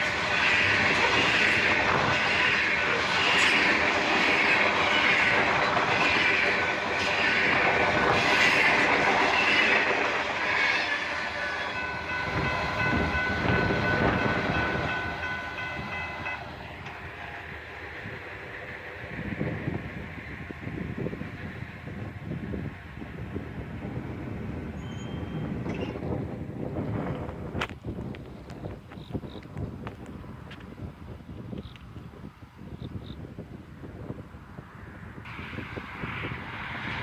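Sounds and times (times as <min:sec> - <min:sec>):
freight train wheel clatter: 0:00.0 - 0:30.9
steady high tones ringing: 0:10.5 - 0:18.0.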